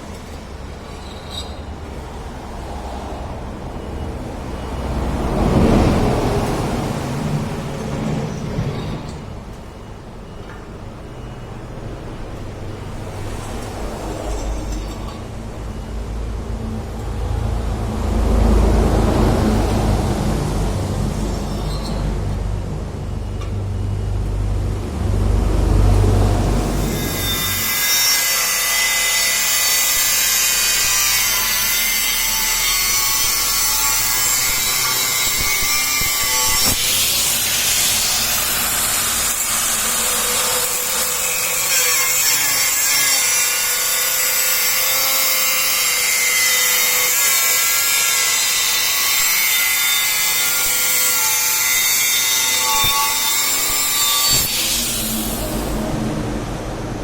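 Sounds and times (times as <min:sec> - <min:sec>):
power tool running on metal: 0:26.8 - 0:55.8.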